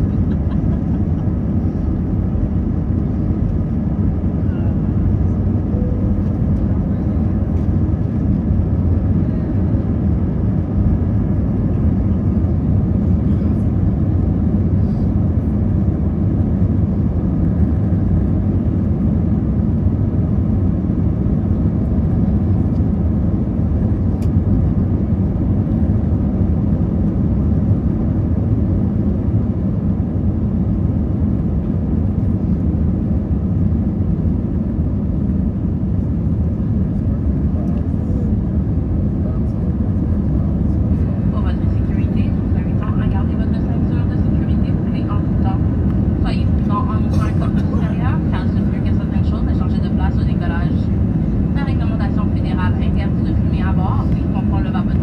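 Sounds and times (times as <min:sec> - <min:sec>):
jet engine and airflow rumble: 0:00.0 - 0:55.0.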